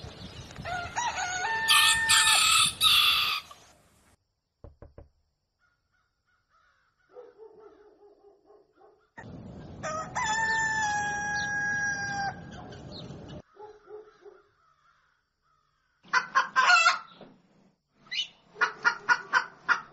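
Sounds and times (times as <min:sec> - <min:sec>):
rooster crowing: 0:00.7 - 0:03.6, 0:09.8 - 0:12.8
rapid choppy fowl calls: 0:16.0 - 0:17.2, 0:18.2 - 0:19.9
soft clucks: 0:18.5 - 0:19.9.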